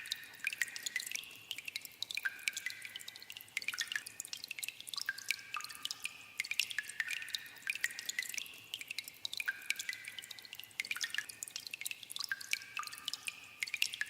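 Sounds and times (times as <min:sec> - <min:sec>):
water dripping in a cave: 0:00.0 - 0:14.0.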